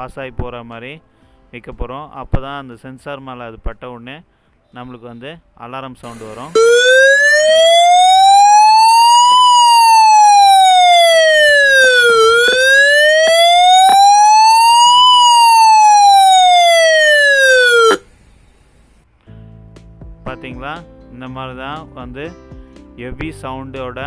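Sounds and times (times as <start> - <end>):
smoke alarm wailing siren: 6.2 - 18.0.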